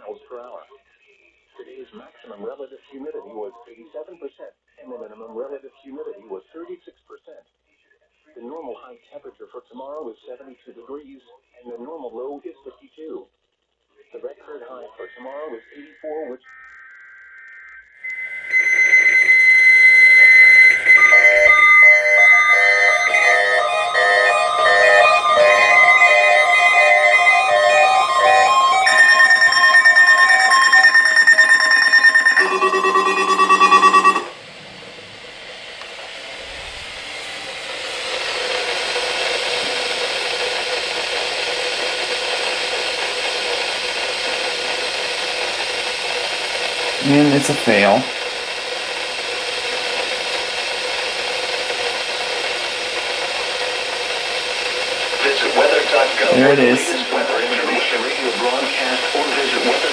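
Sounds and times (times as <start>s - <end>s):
short electronic beeps: 18.1s - 34.4s, 55.2s - 59.9s
buzzing data tones: 18.1s - 34.9s
high-pitched alarm tone: 18.1s - 35.3s, 37.1s - 59.9s
radio static hiss: 18.2s - 31.6s, 37.4s - 59.9s.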